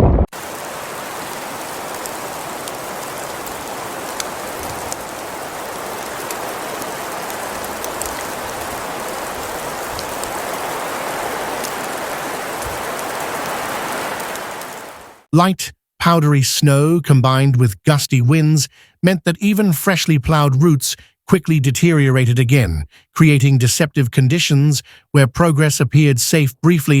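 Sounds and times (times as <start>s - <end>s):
hiss of falling precipitation: 0.3s - 15.3s.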